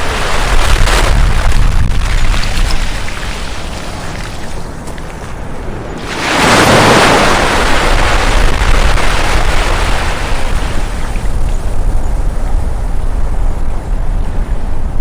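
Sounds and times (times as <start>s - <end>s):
sea wave breaking: 0.0s - 11.6s.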